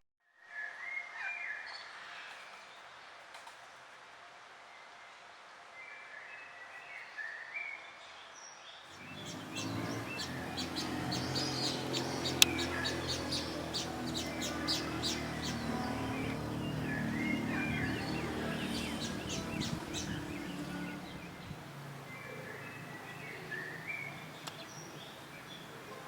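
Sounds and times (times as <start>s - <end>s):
songbirds chirping: 8.9s - 26.0s
low steady hum: 9.0s - 26.0s.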